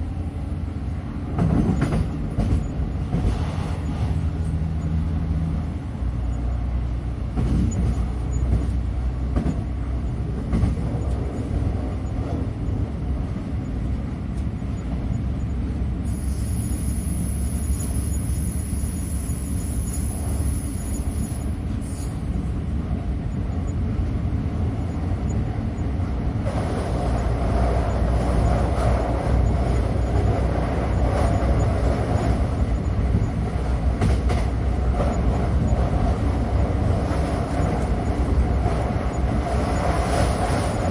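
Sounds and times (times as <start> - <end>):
train rumbling on rails: 0.0 - 40.9
faint high whine: 16.0 - 22.1.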